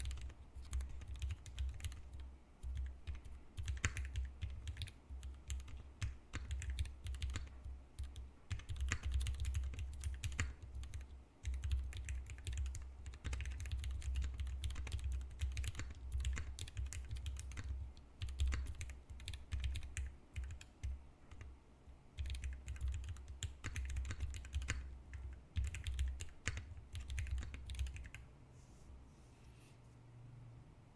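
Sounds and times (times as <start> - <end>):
mechanical keyboard typing: 0.0 - 21.5, 22.2 - 28.2.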